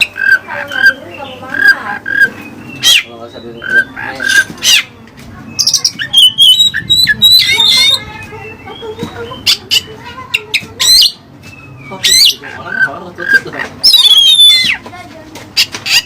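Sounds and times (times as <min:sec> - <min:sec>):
bird singing whistles and chirps: 0:05.5 - 0:09.4.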